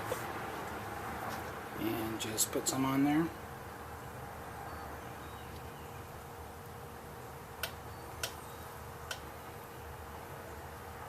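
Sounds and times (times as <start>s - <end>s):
steady low hum: 0.0s - 11.0s
light sharp clicks: 7.6s - 8.4s, 9.0s - 9.3s.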